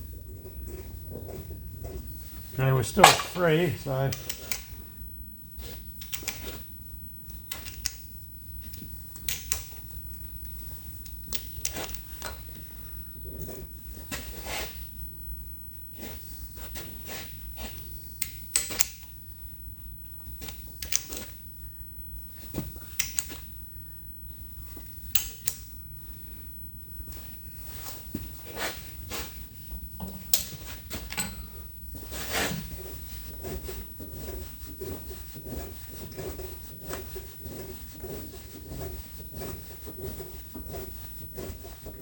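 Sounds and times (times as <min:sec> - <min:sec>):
steady low hum: 0:00.0 - 0:42.0
metallic clicks of hand tools: 0:04.1 - 0:04.7, 0:06.0 - 0:06.5, 0:07.5 - 0:08.0, 0:08.6 - 0:09.8, 0:23.0 - 0:23.4, 0:25.1 - 0:25.6.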